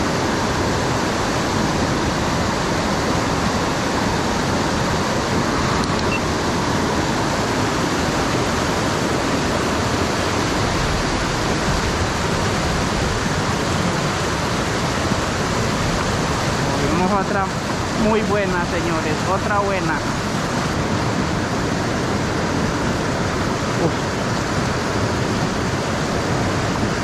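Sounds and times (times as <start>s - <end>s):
fast-flowing water rushing: 0.0s - 27.0s.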